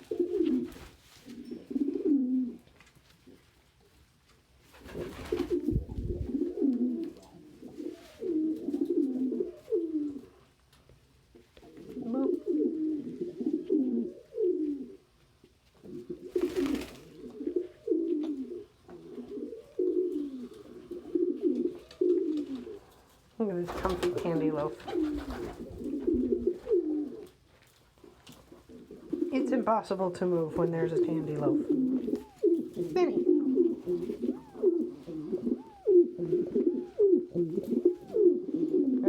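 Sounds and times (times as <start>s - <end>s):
rustling noise: 0.0s - 1.8s, 2.6s - 9.2s
pigeons cooing: 0.0s - 2.6s, 4.8s - 10.5s, 11.3s - 15.1s, 15.8s - 27.4s, 28.0s - 39.0s.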